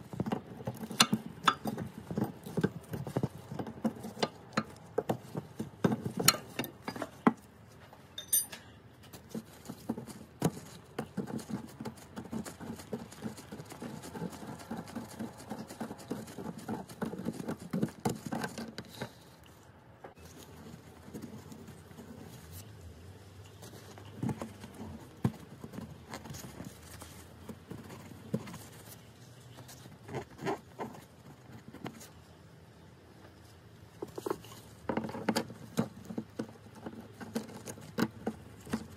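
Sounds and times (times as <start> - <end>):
rustling handling noise: 0.0 - 38.9
spanner and metal parts clicking: 8.2 - 8.6.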